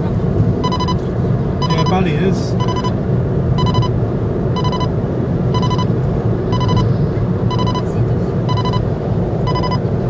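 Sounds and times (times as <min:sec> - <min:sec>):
car cabin rumble: 0:00.0 - 0:10.0
dashboard warning chime beeps: 0:00.6 - 0:01.0, 0:01.6 - 0:02.0, 0:02.6 - 0:03.0, 0:03.6 - 0:04.0, 0:04.6 - 0:04.9, 0:05.5 - 0:05.9, 0:06.5 - 0:06.9, 0:07.5 - 0:09.8.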